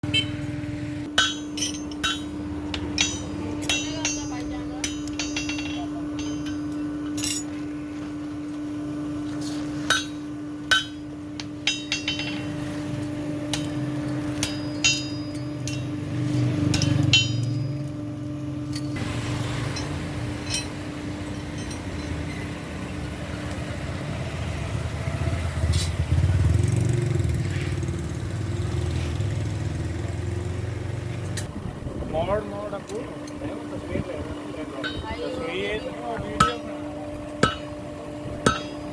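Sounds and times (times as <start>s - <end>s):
rumble of passing vehicles: 0.0s - 38.9s
steady hum: 0.1s - 23.3s, 31.6s - 38.9s
hammer striking metal: 1.0s - 7.7s, 9.4s - 22.4s, 34.8s - 35.5s, 36.2s - 36.8s, 37.4s - 37.8s, 38.4s - 38.9s.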